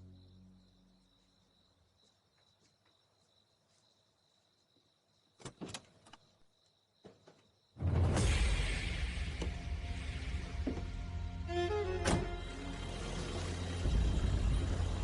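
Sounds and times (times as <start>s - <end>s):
background music: 7.8s - 15.0s.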